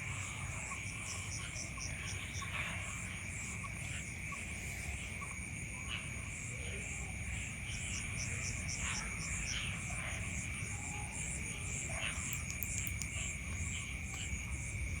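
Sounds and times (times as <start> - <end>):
insects trilling: 0.0 - 15.0
pulsing insect chirping: 7.3 - 15.0.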